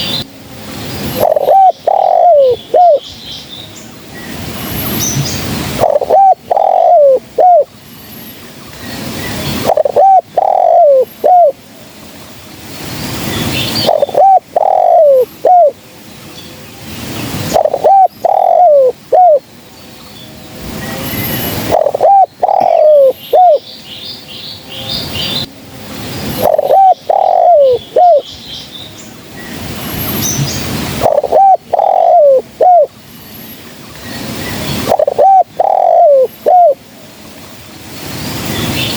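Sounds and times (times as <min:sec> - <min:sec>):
background hiss: 0:00.0 - 0:38.9
dove cooing: 0:01.1 - 0:03.1, 0:05.8 - 0:07.7, 0:09.3 - 0:11.6, 0:13.7 - 0:15.8, 0:17.4 - 0:19.5, 0:21.4 - 0:23.6, 0:26.4 - 0:28.3, 0:31.0 - 0:32.9, 0:34.5 - 0:36.8.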